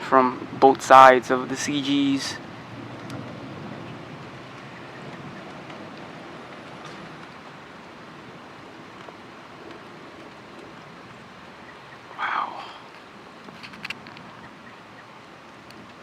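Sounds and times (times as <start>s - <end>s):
rain hissing: 0.0s - 16.0s
wind: 0.0s - 16.0s
faint ticks: 3.0s - 3.4s, 15.6s - 16.0s.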